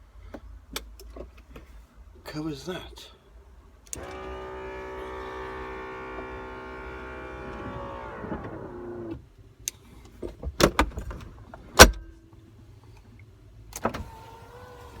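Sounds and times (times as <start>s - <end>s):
power window motor whining: 4.0s - 9.2s, 13.8s - 15.0s.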